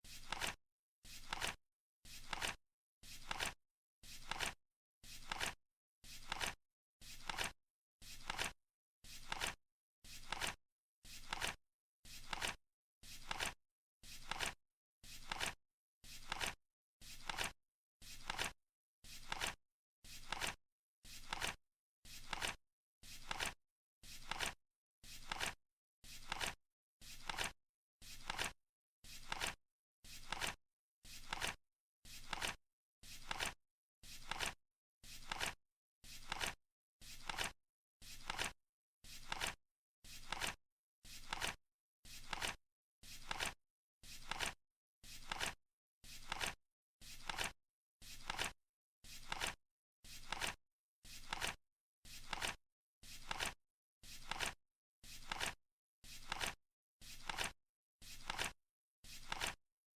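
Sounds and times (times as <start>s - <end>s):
flip clock cards flipping: 0.2s - 0.6s, 1.2s - 1.6s, 2.2s - 2.6s, 3.2s - 3.6s, 4.2s - 4.6s, 5.2s - 5.6s, 6.2s - 6.6s, 7.2s - 7.5s, 8.2s - 8.5s, 9.2s - 9.6s, 10.2s - 10.6s, 11.2s - 11.6s, 12.2s - 12.6s, 13.2s - 13.6s, 14.2s - 14.6s, 15.2s - 15.6s, 16.2s - 16.6s, 17.2s - 17.5s, 18.2s - 18.5s, 19.2s - 19.6s, 20.2s - 20.6s, 21.2s - 21.6s, 22.2s - 22.6s, 23.2s - 23.6s, 24.2s - 24.6s, 25.2s - 25.6s, 26.2s - 26.6s, 27.2s - 27.5s, 28.2s - 28.5s, 29.2s - 29.6s, 30.2s - 30.6s, 31.2s - 31.6s, 32.2s - 32.6s, 33.2s - 33.6s, 34.2s - 34.6s, 35.2s - 35.6s, 36.2s - 36.6s, 37.2s - 37.5s, 38.2s - 38.5s, 39.2s - 39.6s, 40.2s - 40.6s, 41.2s - 41.6s, 42.2s - 42.6s, 43.2s - 43.6s, 44.2s - 44.6s, 45.2s - 45.6s, 46.2s - 46.6s, 47.2s - 47.5s, 48.2s - 48.5s, 49.2s - 49.6s, 50.2s - 50.6s, 51.2s - 51.6s, 52.2s - 52.6s, 53.2s - 53.6s, 54.2s - 54.6s, 55.2s - 55.6s, 56.2s - 56.6s, 57.2s - 57.5s, 58.2s - 58.5s, 59.2s - 59.6s.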